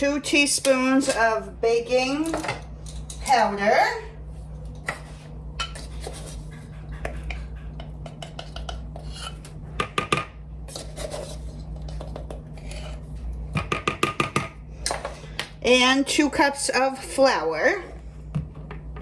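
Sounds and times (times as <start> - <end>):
utensils scraping a mixing bowl: 4.3 - 13.2.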